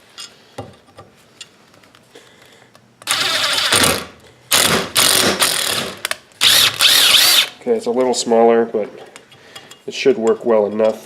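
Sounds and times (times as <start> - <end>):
power drill cutting into steel: 3.1 - 7.6.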